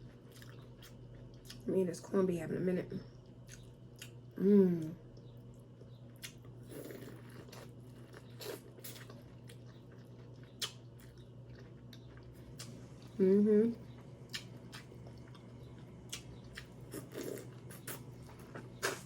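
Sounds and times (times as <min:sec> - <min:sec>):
person humming: 0:04.4 - 0:05.0
chewing clicks: 0:05.2 - 0:12.7.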